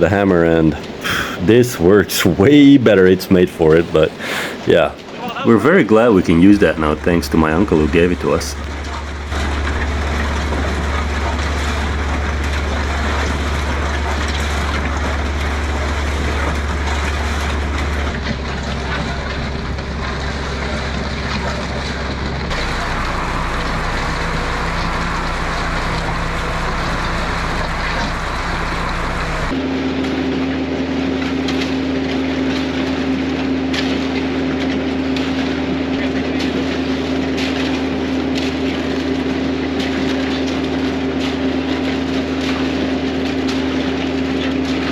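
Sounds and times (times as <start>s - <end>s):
heavy machinery engines running: 5.5s - 29.6s
higher-pitched hum: 22.5s - 29.6s.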